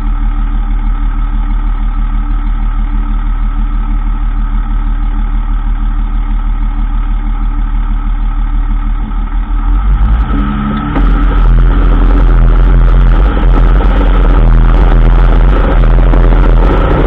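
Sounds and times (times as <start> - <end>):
truck engine hum: 0.0 - 17.0
high whine: 8.1 - 17.0.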